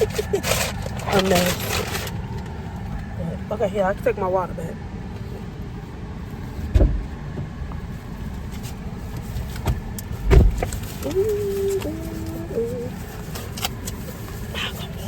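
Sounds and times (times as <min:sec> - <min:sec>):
low rumble inside car: 0:00.0 - 0:15.0
dull thumps: 0:06.6 - 0:07.9, 0:09.4 - 0:10.9.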